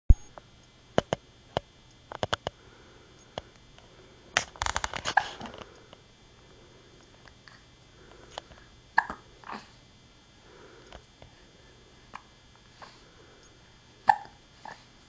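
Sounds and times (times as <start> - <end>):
baby hiccuping: 9.0 - 9.6, 14.1 - 14.4.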